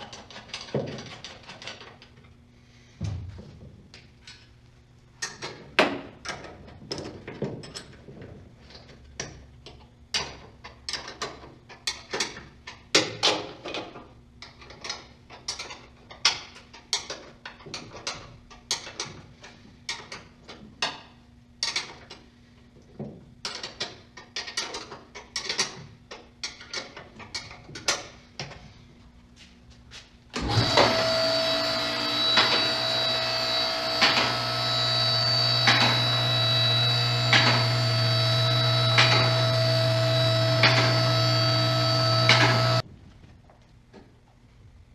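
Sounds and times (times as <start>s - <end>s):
power tool whining: 30.4s - 42.8s.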